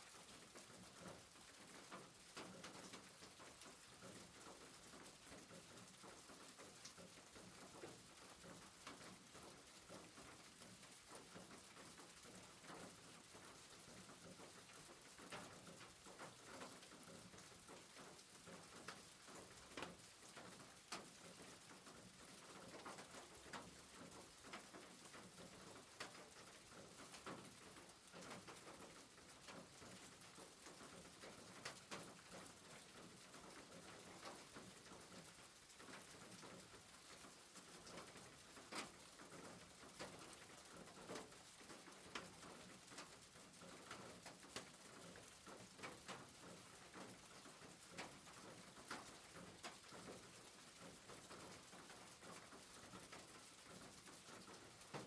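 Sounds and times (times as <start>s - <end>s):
rain patter on roof: 0.0s - 55.0s
raindrops ticking on roof: 0.0s - 55.0s.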